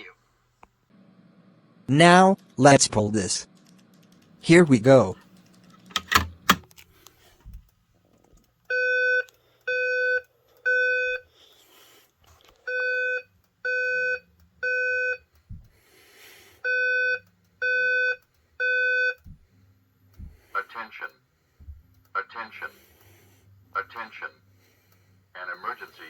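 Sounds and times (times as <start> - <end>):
fire alarm pull station clicks: 5.2 - 6.8.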